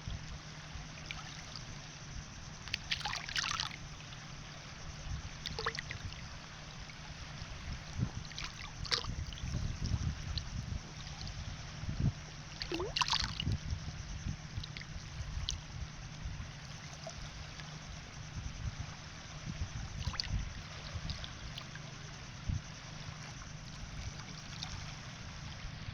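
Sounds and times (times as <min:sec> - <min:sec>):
waves washing: 0:05.3 - 0:11.7.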